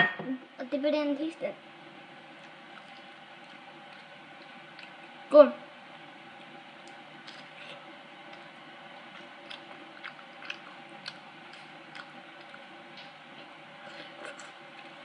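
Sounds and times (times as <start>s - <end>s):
steady low hum: 0.0s - 15.0s
person chewing: 2.3s - 5.2s, 6.3s - 15.0s.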